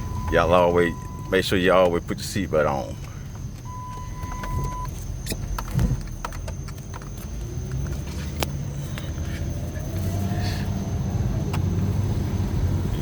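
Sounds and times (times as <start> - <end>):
electronic beep: 0.0 - 1.7, 3.6 - 7.6
car engine rumble: 0.0 - 13.0.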